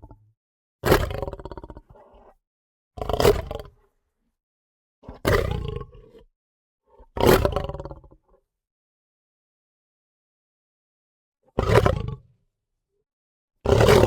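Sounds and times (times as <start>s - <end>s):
big cat snarling roars: 0.8s - 2.4s, 3.0s - 3.8s, 5.0s - 6.3s, 6.9s - 8.2s, 11.5s - 12.3s, 13.6s - 14.0s.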